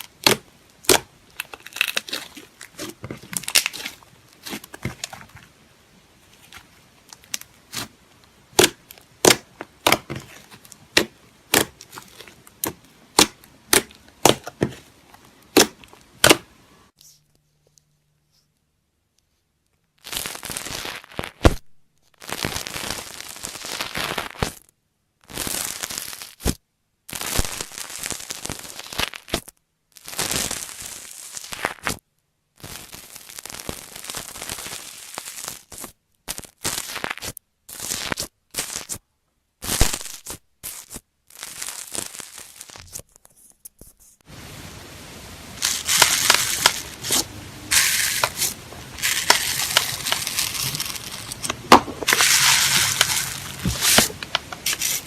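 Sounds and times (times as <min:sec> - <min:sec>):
slime crackling and popping: 0:00.0 - 0:05.5, 0:06.4 - 0:16.4, 0:45.6 - 0:55.0
sharp slime pops: 0:00.1 - 0:05.2, 0:08.6 - 0:10.3, 0:10.9 - 0:14.8, 0:15.5 - 0:16.5.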